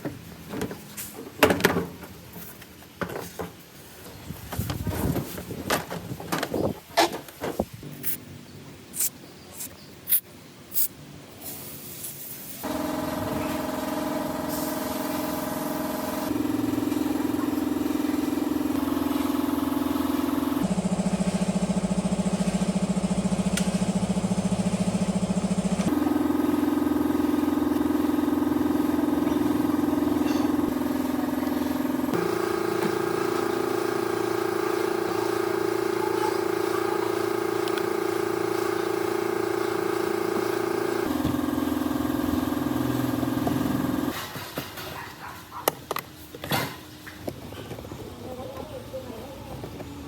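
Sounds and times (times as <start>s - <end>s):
power tool motor humming: 12.6s - 20.7s, 25.8s - 44.1s.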